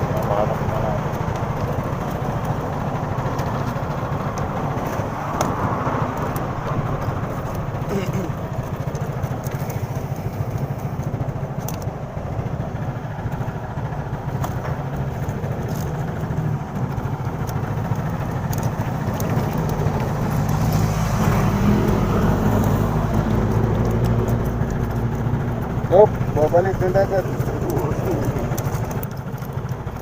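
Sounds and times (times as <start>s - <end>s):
traffic rumble: 0.0s - 30.0s
vehicle engine hum: 0.0s - 30.0s.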